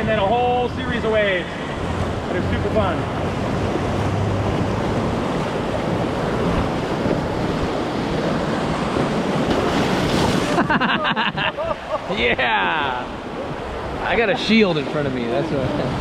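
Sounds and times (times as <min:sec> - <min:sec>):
wind buffeting microphone: 0:00.0 - 0:11.0
whitewater river rapids: 0:00.0 - 0:16.0.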